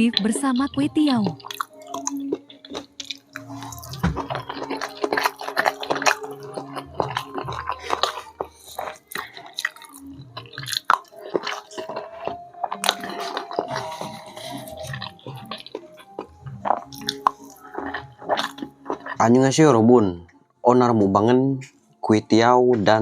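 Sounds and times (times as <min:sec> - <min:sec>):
person chewing food: 0:00.0 - 0:19.7.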